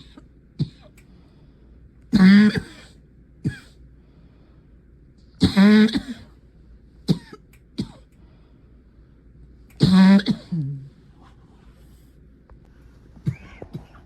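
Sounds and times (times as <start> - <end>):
person coughing: 0.0 - 1.0, 2.1 - 3.8, 5.4 - 6.4, 7.1 - 8.1, 9.8 - 10.9, 13.2 - 14.0.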